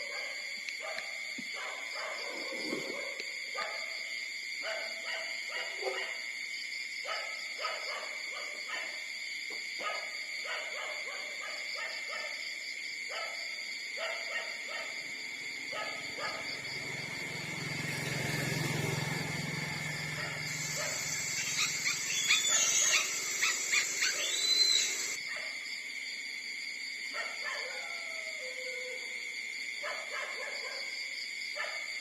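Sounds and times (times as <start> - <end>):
steady high-pitched hum: 20.5 - 25.2.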